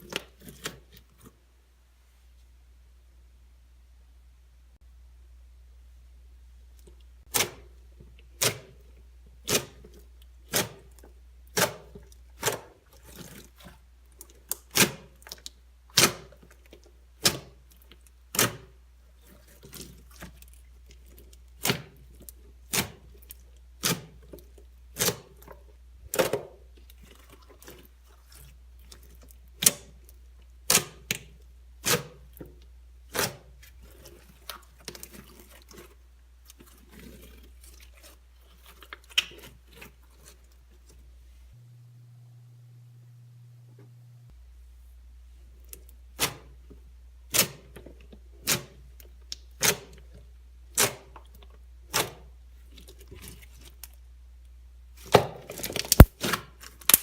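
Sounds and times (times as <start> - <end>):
slime squishing and popping: 55.0 - 57.0.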